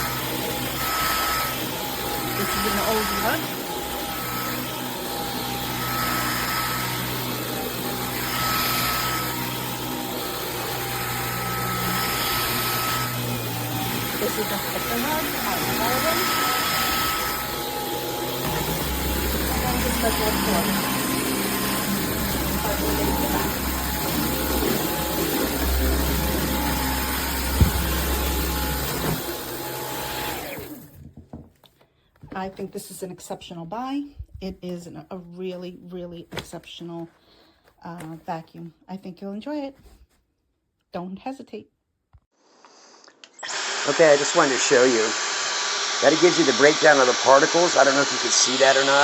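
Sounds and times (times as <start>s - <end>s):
vacuum cleaner running: 0.0s - 31.0s, 43.4s - 49.0s.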